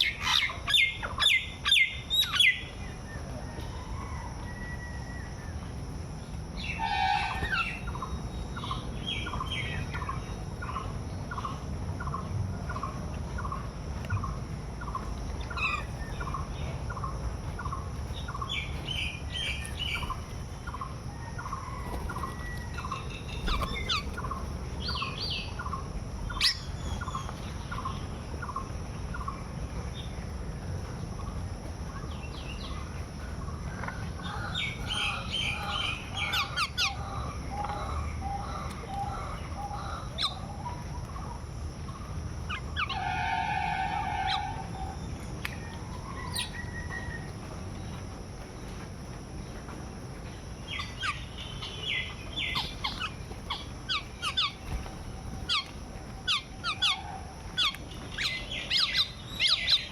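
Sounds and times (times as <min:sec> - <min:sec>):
birds calling and chirping: 0:00.0 - 0:48.8, 0:49.4 - 0:59.9.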